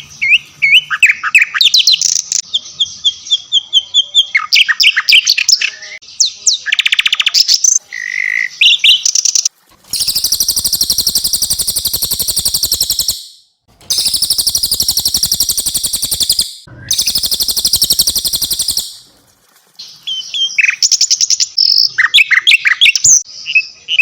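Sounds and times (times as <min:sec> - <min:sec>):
songbird chirps and whistles: 0:00.2 - 0:19.1
fast high bird trill: 0:09.9 - 0:19.1.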